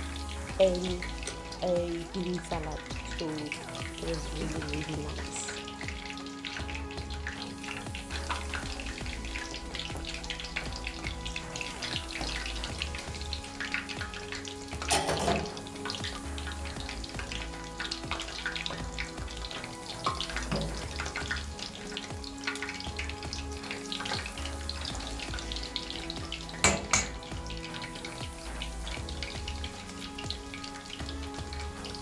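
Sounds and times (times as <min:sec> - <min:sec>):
chicken frying in hot oil: 0:00.0 - 0:32.0.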